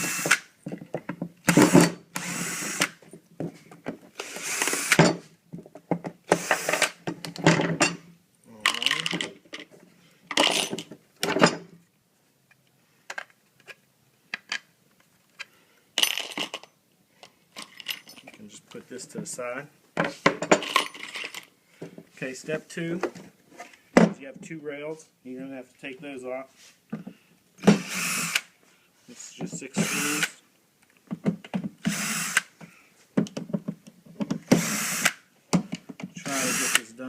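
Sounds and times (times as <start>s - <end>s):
power drill driving screws: 0.0s - 0.5s, 1.4s - 3.0s, 4.2s - 5.0s, 6.3s - 7.0s, 27.6s - 28.5s, 29.8s - 30.4s, 31.8s - 32.5s, 34.4s - 35.2s, 36.2s - 37.0s.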